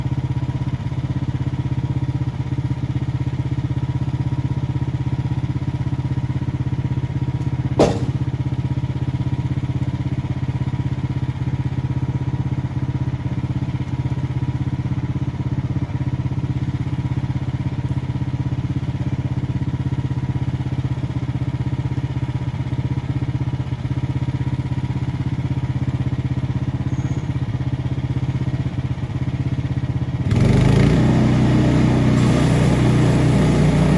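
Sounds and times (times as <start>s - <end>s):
sharp knock: 7.8s - 8.3s
small engine running: 16.0s - 33.9s.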